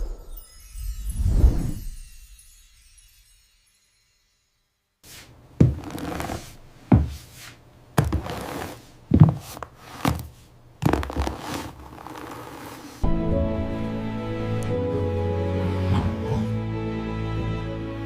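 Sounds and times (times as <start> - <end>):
music: 0.0 - 5.0, 13.0 - 18.0.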